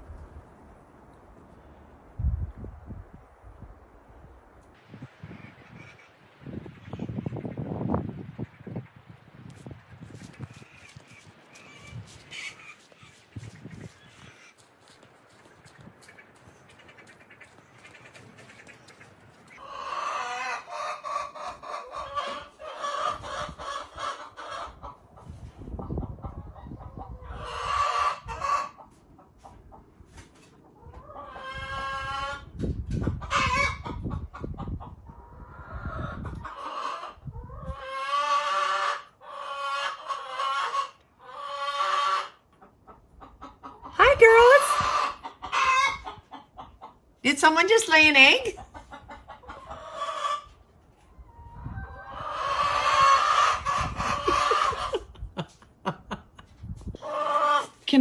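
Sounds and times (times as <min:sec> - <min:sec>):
hen squawking: 0:10.5 - 0:14.6, 0:44.0 - 0:46.0, 0:52.4 - 0:55.0.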